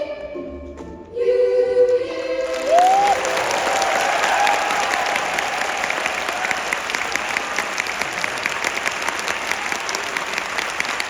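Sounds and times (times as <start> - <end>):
audience applauding: 2.4 - 11.0.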